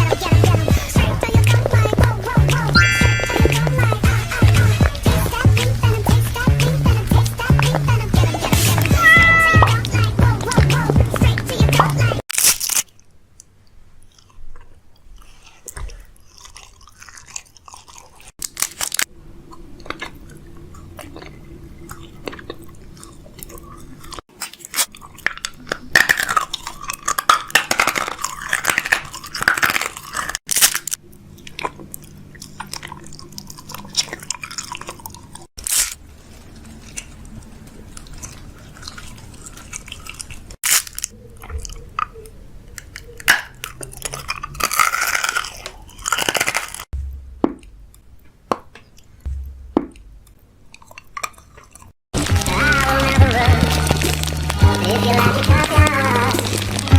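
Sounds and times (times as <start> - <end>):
crunchy chewing and biting: 0.0 - 56.9.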